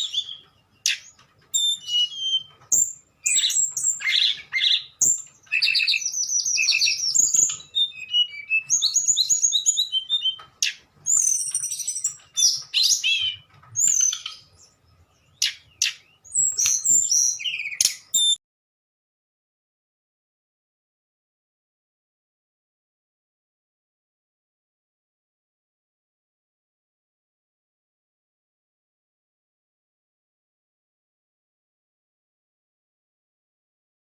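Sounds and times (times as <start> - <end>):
songbird singing: 0.0 - 18.4.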